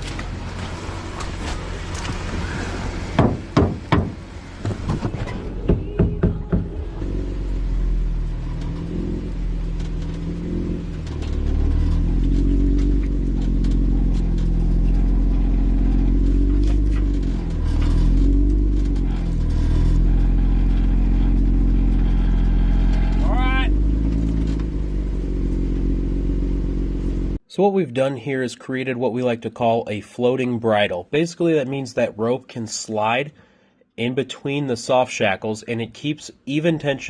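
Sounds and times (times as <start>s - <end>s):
car engine revving: 0.0s - 27.4s
knocks: 3.2s - 6.8s.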